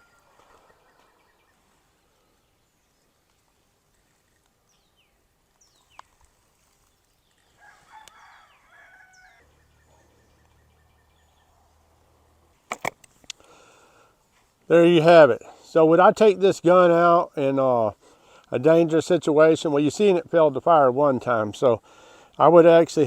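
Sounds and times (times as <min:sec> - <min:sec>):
bird crowing: 0:00.0 - 0:01.5, 0:07.4 - 0:11.6
high bird chirps: 0:08.1 - 0:11.8.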